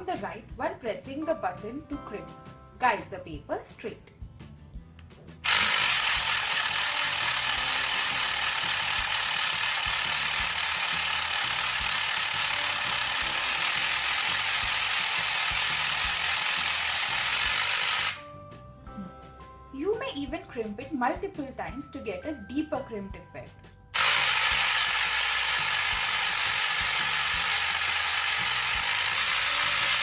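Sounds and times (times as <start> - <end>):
motor driving gears whirring: 5.4 - 18.2, 24.0 - 30.0.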